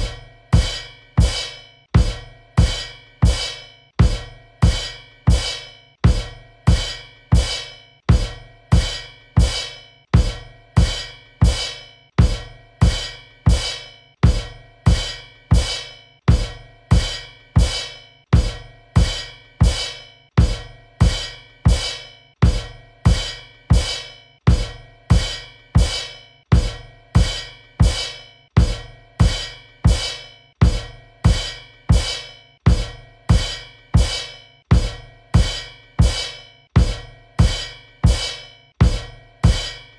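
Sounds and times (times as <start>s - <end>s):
bass drum and cymbal hits: 0.0s - 39.9s.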